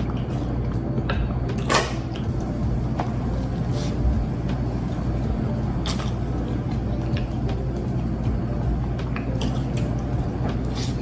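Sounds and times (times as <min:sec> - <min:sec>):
steady low hum: 0:00.0 - 0:11.0
wet chewing and squelching: 0:05.8 - 0:07.5.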